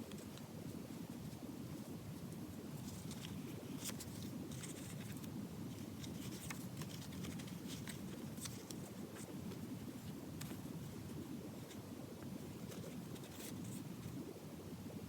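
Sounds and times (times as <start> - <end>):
low background hiss: 0.0 - 15.0
hands handling notebook pages: 2.8 - 10.7, 12.5 - 13.9.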